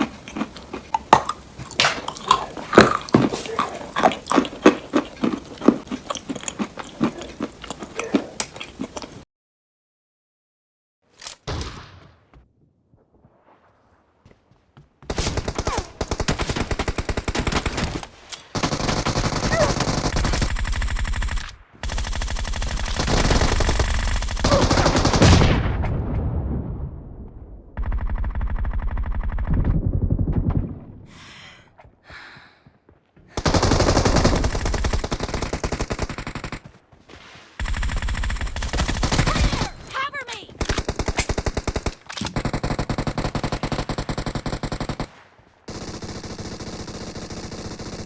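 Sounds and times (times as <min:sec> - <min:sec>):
automatic gunfire: 0:18.6 - 0:25.7, 0:33.4 - 0:36.7.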